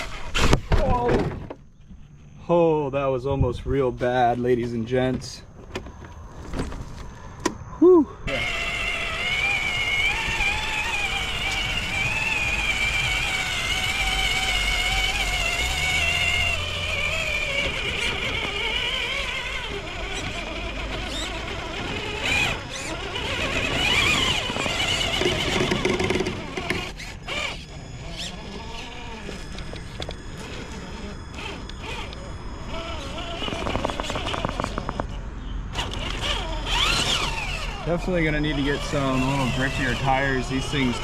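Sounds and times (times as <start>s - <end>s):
electric motor whining: 5.8s - 41.0s
toy truck clicking and scraping: 8.3s - 41.0s.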